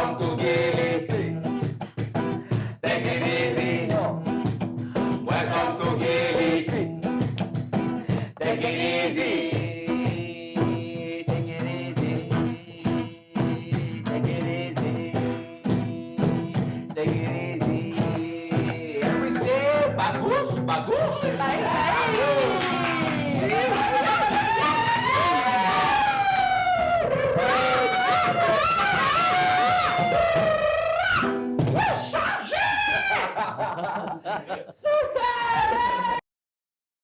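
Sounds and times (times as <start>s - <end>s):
person singing: 0.0s - 1.7s, 8.3s - 33.4s
reggae band playing: 0.0s - 8.5s, 13.4s - 32.1s.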